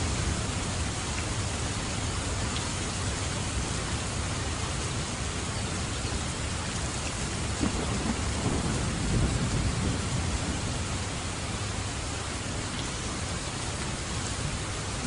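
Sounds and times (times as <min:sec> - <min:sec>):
heavy rain hissing: 0:00.0 - 0:15.0
thunder rumbling: 0:07.4 - 0:11.9.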